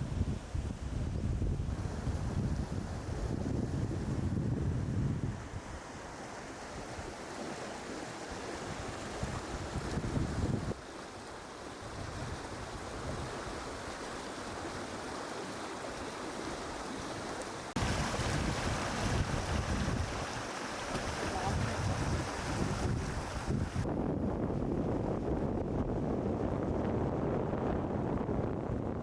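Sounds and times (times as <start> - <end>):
wind buffeting microphone: 0.0 - 5.8, 8.7 - 10.8, 17.8 - 29.0
waterfall and river rushing: 13.6 - 23.8.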